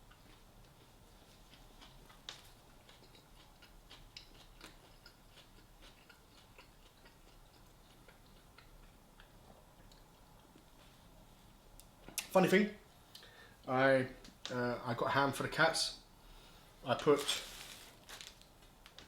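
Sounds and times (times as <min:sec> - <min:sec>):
person eating clicks and smacks: 0:01.5 - 0:10.7.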